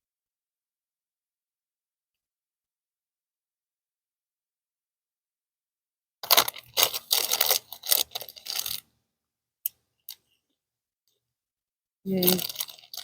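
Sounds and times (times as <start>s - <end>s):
food packaging crinkling: 6.2s - 8.8s, 12.1s - 13.0s.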